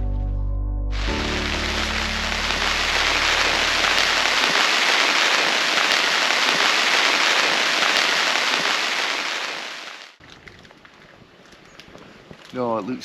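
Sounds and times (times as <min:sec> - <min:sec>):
heavy rain hiss: 0:01.0 - 0:10.2.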